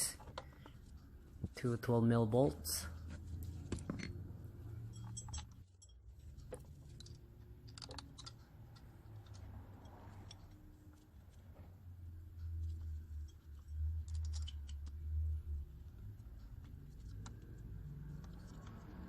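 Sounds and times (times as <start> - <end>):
metallic clicks of bolts and tools: 3.6 - 11.0, 12.7 - 15.4.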